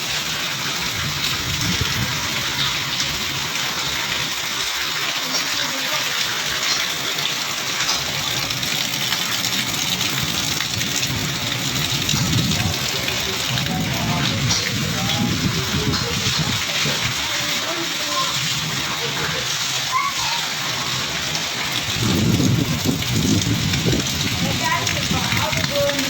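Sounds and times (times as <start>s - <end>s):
heavy rain pouring: 0.0s - 26.0s
strong wind gusting: 0.8s - 3.4s, 10.2s - 17.4s, 21.7s - 26.0s.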